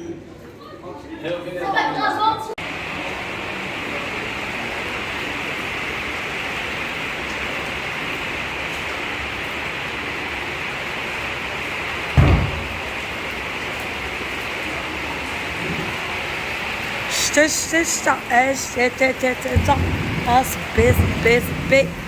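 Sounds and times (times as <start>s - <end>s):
heavy rain pouring: 2.6s - 22.0s
low thump: 12.2s - 13.1s, 19.5s - 22.0s.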